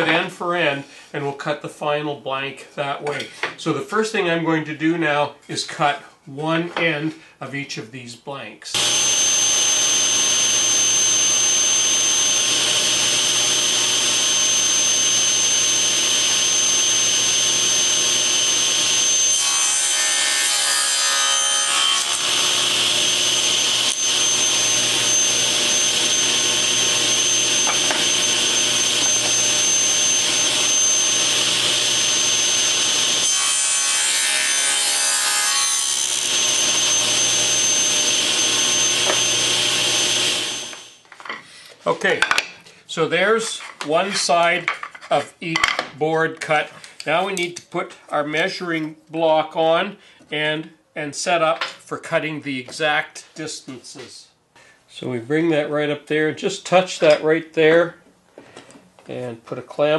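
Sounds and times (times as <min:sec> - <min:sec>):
table saw whining: 0:08.7 - 0:41.0
saw blade cutting wood: 0:08.8 - 0:41.0.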